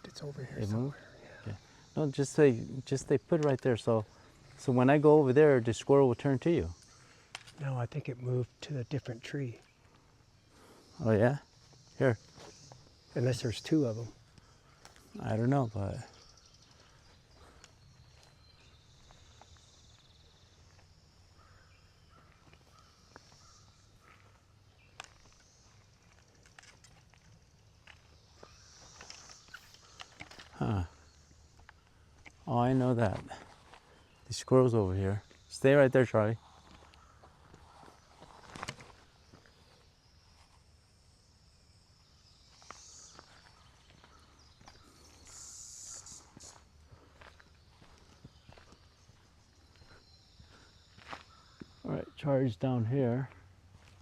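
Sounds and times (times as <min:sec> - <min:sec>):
faint bird chirps: 0:00.0 - 0:54.0
faint insect trill: 0:00.0 - 0:54.0
high-pitched insect buzz: 0:25.0 - 0:31.8, 0:36.4 - 0:43.9, 0:44.6 - 0:46.7.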